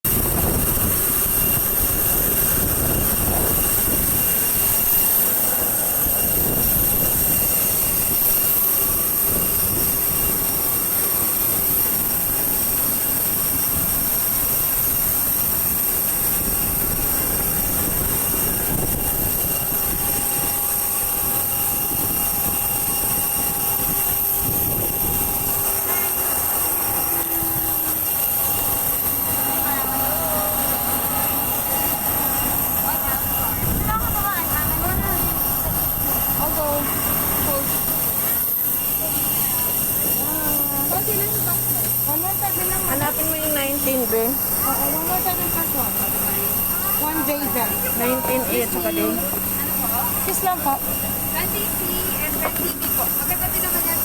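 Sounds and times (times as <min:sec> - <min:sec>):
jet engines rushing and whining: 0:00.1 - 0:54.0
tone falling in pitch: 0:25.7 - 0:38.0.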